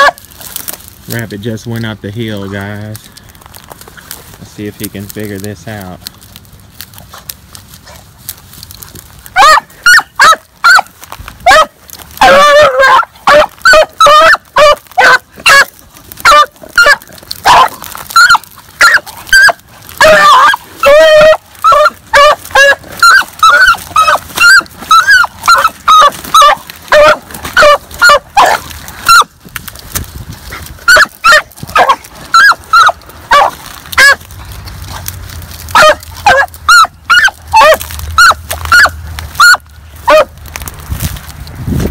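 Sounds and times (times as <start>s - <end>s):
hound baying: 0.0s - 0.3s, 9.2s - 29.4s, 30.4s - 40.4s.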